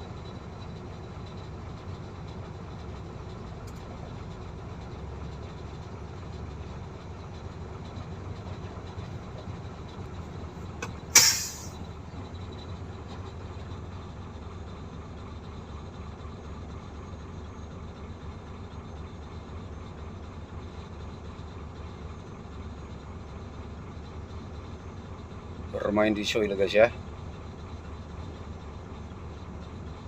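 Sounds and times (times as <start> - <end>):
excavator diesel engine running: 0.0 - 30.0
sharp loud hiss or clang: 11.2 - 11.8.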